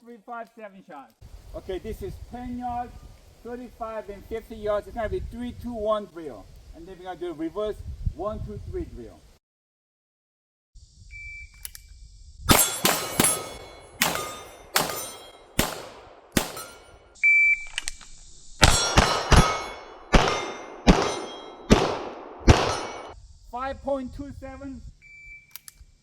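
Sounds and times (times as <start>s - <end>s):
steel target plates ringing: 12.5s - 15.8s, 16.4s - 17.0s, 18.6s - 21.7s, 22.7s - 23.2s
pistol shots: 12.5s - 16.9s, 18.6s - 23.2s.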